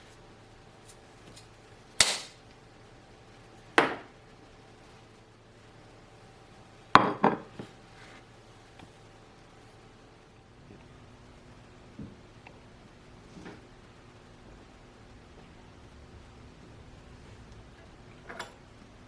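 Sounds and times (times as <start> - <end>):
utensils and dishes clinking: 18.1 - 18.7.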